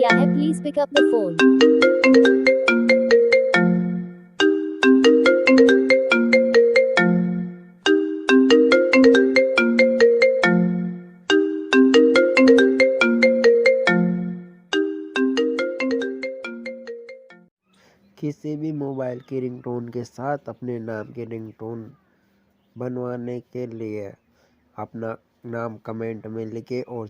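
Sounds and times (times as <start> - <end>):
phone ringtone melody: 0.0 - 17.5.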